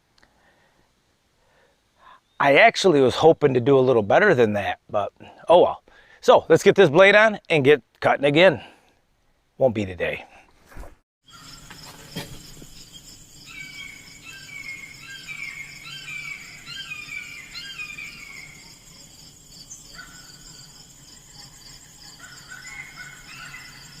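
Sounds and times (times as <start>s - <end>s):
birds chirping: 11.2s - 24.0s
insects trilling: 11.2s - 24.0s.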